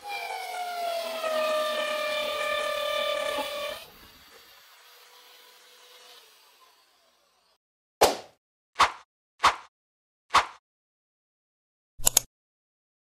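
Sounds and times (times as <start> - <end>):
electric drill motor whining: 0.0 - 7.6.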